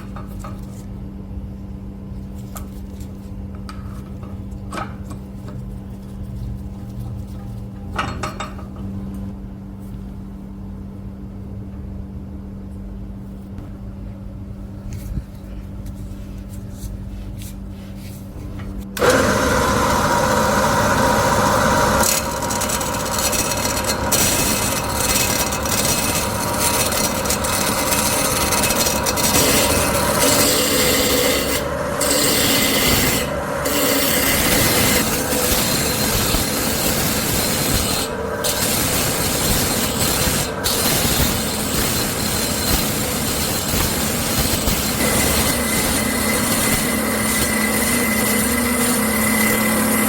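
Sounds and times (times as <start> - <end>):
steady low hum: 0.0 - 19.1
tool rasping against material: 21.8 - 50.0.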